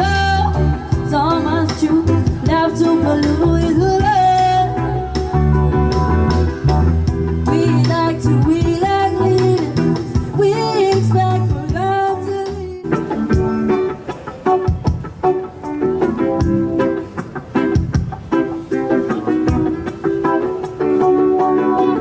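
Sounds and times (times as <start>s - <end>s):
street performers singing: 0.0s - 6.0s, 6.6s - 14.8s
guitar: 0.0s - 22.0s
bass line: 12.8s - 14.9s.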